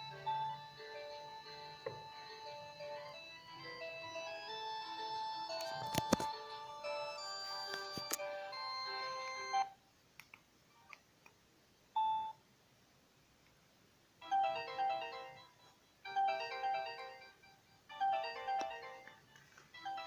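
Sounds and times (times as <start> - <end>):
phone ringtone melody: 0.0 - 9.8, 14.2 - 19.2, 19.8 - 20.0
previous phone tone: 0.0 - 9.8.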